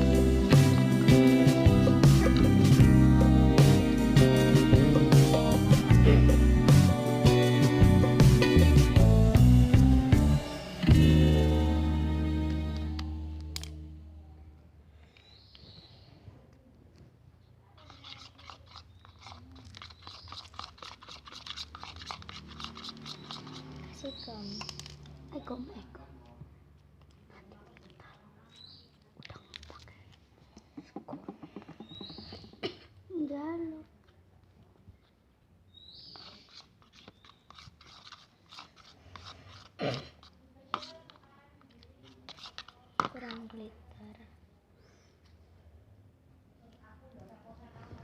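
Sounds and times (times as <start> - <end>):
hands handling containers: 17.9 - 25.3, 36.0 - 43.6.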